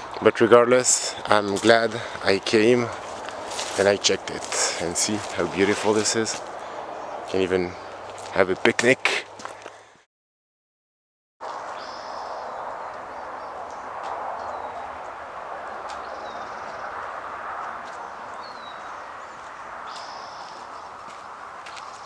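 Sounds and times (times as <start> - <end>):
distant highway traffic: 0.0 - 10.0, 11.4 - 22.0
high bird chirps: 18.0 - 21.0.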